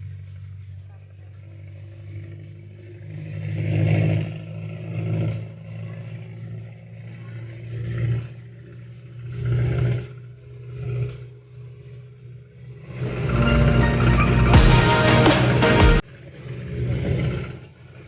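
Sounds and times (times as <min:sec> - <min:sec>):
vehicle engine running: 0:00.0 - 0:18.0
traffic rushing past: 0:12.8 - 0:16.0.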